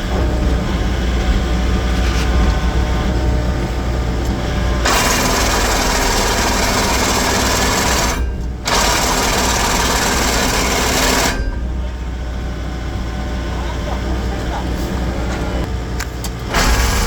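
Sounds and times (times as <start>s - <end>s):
excavator engine: 0.0s - 17.0s
hydraulic attachment buzzing rattle: 4.2s - 12.1s, 15.9s - 17.0s.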